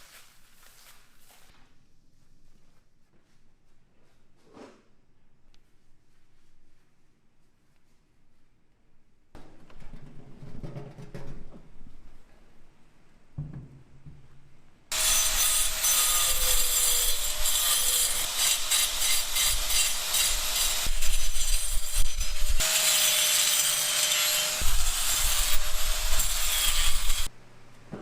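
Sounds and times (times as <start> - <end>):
power tool grinding: 14.9 - 27.3.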